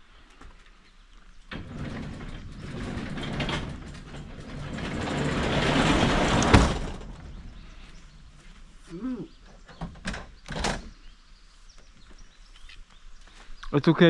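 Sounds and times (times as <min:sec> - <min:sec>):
garage door click: 0:01.5 - 0:07.6
garage door rattling: 0:01.5 - 0:08.4.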